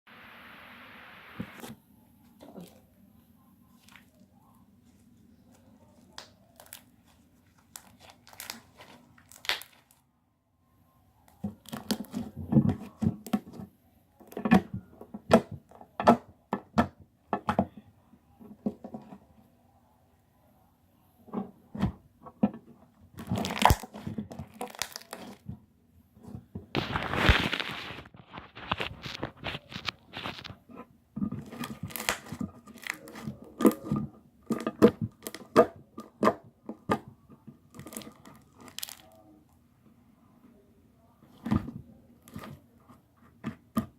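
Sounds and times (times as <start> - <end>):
slime crackling: 6.0 - 10.0, 23.2 - 25.5, 31.4 - 35.7, 37.7 - 39.2
slime clicking and popping: 9.3 - 9.9, 23.2 - 25.4, 31.8 - 33.2.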